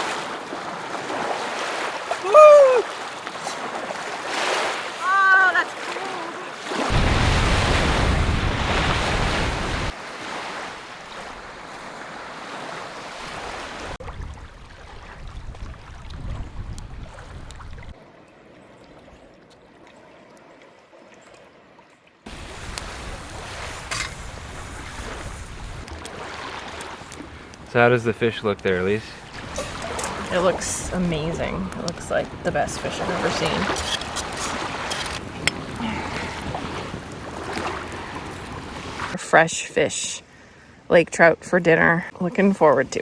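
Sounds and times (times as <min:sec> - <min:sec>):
surf washing onto beach: 0:00.0 - 0:18.0, 0:22.3 - 0:39.2
wind noise on microphone: 0:14.0 - 0:18.0, 0:22.3 - 0:27.7.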